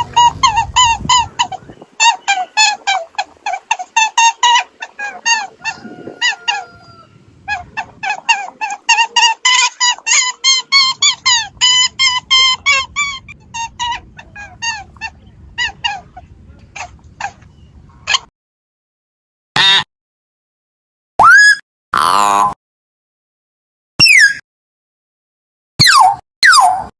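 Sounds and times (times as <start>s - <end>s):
geese honking: 0.0s - 17.6s.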